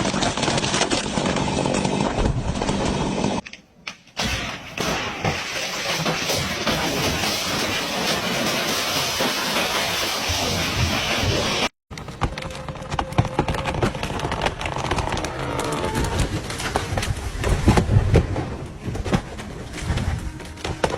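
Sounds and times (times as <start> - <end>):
wood cracking and snapping: 0.0 - 7.4, 11.9 - 20.9.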